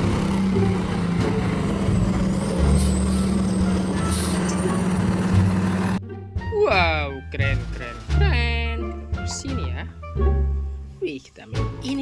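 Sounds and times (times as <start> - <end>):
heavy truck engine running: 0.0 - 6.1.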